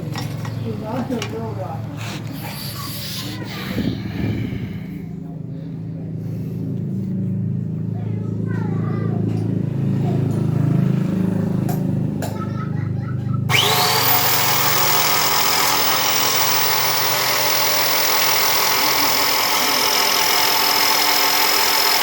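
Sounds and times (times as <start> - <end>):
angle grinder whining: 13.5 - 22.0.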